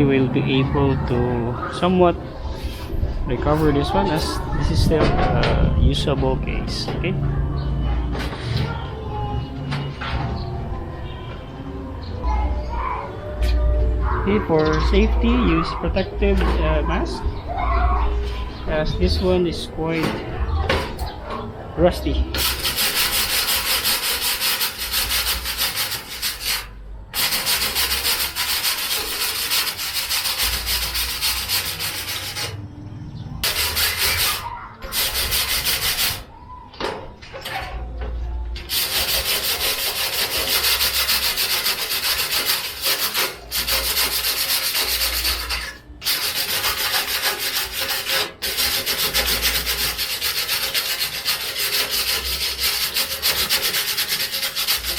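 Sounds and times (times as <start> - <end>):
abrasive scrubbing on steel: 22.3 - 32.7, 33.4 - 36.3, 38.6 - 54.9.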